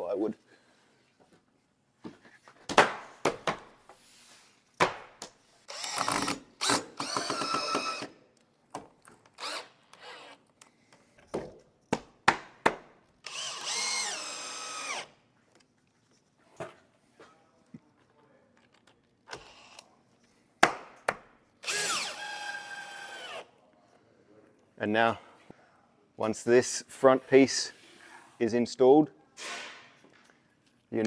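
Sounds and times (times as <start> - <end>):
drill driving screws into wood: 5.7 - 8.2, 9.3 - 10.4, 13.2 - 15.2, 19.3 - 19.9, 21.6 - 23.5.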